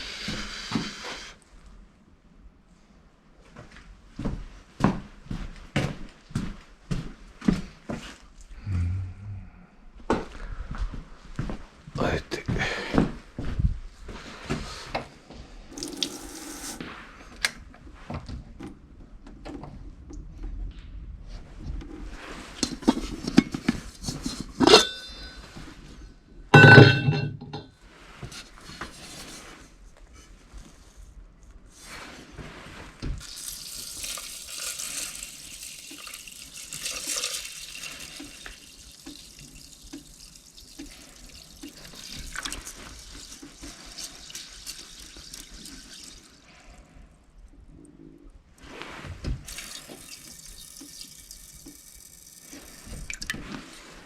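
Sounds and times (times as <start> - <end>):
water pouring into container: 15.7 - 16.9, 33.2 - 46.8, 49.4 - 54.0
metal cookware clattering: 23.3 - 25.6, 26.6 - 27.7.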